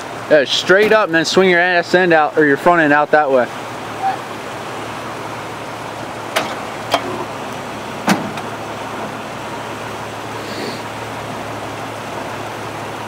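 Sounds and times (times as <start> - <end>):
engine running at low speed: 0.0 - 13.0
sharp knocks: 6.3 - 7.1.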